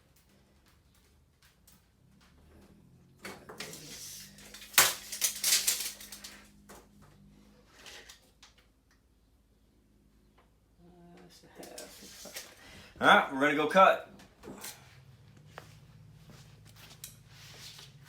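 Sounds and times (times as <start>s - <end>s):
tape measure and metal trim clattering: 3.2s - 6.6s.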